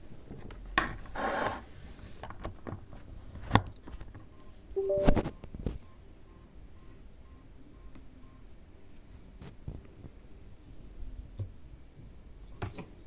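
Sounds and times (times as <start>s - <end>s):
two-note beep: 4.8s - 5.3s.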